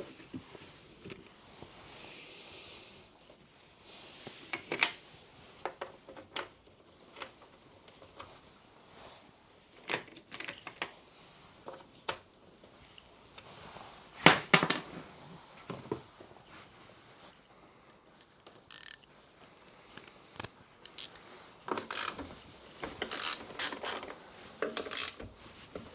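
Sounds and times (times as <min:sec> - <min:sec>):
metal sockets clinking: 0:18.2 - 0:21.2.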